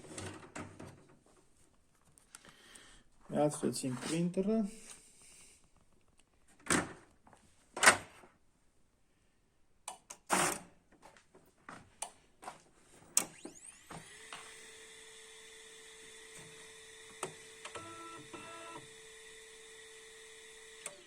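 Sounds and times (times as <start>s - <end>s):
rising whine of spinning motor: 13.4s - 17.1s
printer hum: 13.6s - 21.0s.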